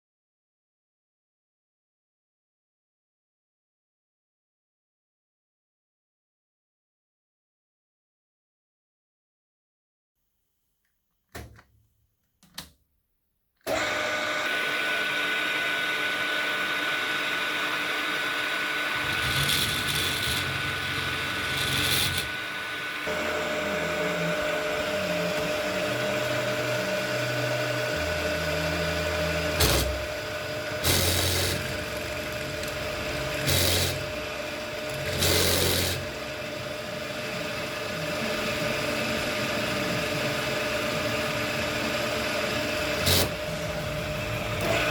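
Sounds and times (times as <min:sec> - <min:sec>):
electric power tool whining: 0:13.7 - 0:44.9.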